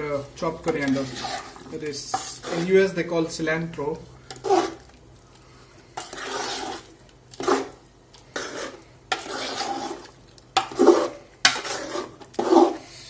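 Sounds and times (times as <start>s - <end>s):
spoon scraping thick sauce in pot: 0.5s - 3.0s, 4.2s - 5.0s, 5.9s - 12.9s.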